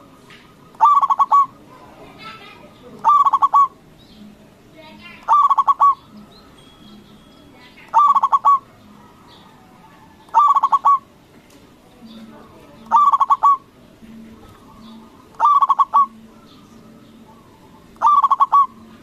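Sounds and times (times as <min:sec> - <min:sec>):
dove staccato cooing: 0:00.0 - 0:04.0, 0:05.0 - 0:06.3, 0:07.9 - 0:11.3, 0:12.8 - 0:19.0.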